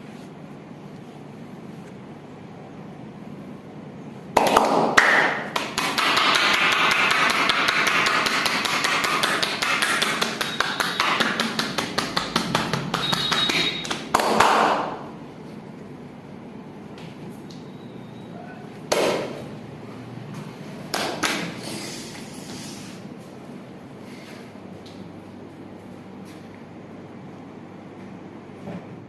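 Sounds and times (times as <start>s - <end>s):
hands slapping body: 20.9s - 21.5s.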